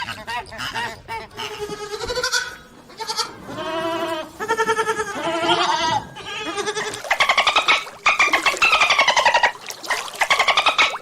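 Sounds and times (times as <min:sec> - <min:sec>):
goats bleating: 0:01.4 - 0:07.1.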